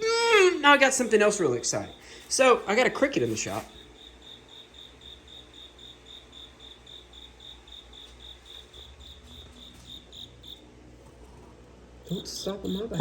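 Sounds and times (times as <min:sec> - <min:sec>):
cricket chirping: 0:01.6 - 0:10.7, 0:12.1 - 0:13.0.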